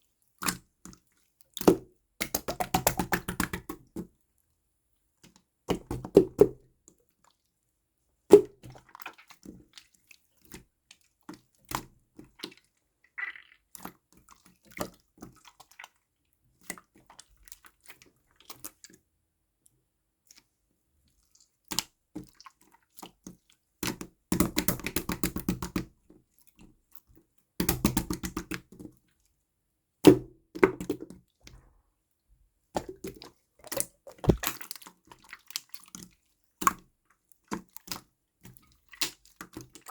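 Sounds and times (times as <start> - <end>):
slime fast crackling: 33.6 - 34.5
slime sticky clicks and pops: 33.6 - 34.5.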